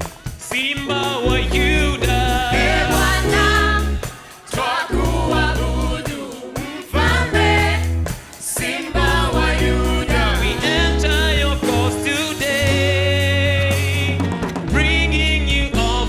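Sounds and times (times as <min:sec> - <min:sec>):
band with heavy bass: 0:00.0 - 0:16.0
voices singing together: 0:00.0 - 0:16.0.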